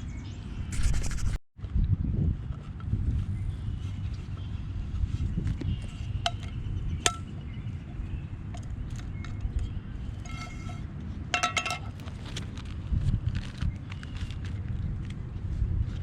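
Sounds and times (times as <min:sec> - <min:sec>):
wind on microphone: 0:00.5 - 0:16.0
metal cooking gear clinking: 0:11.4 - 0:12.0.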